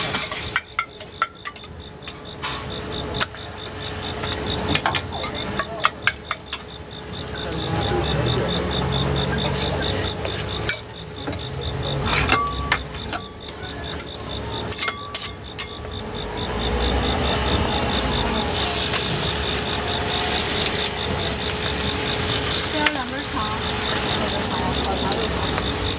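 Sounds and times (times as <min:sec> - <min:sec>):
food sizzling: 0:00.0 - 0:25.9
utensils clacking on cookware: 0:00.0 - 0:25.9.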